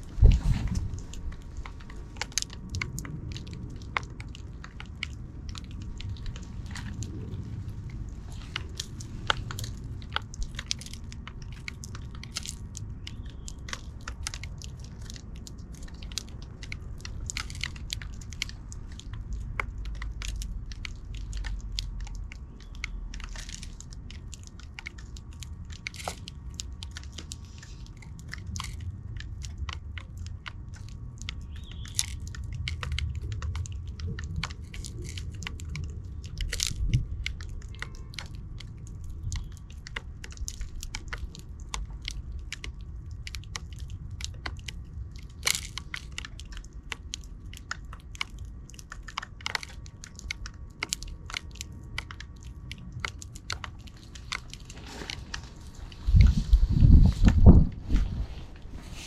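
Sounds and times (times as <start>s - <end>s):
low rumble: 0.0s - 49.3s, 50.1s - 59.0s
sparrows clicking and tapping: 12.3s - 14.2s, 31.3s - 32.3s.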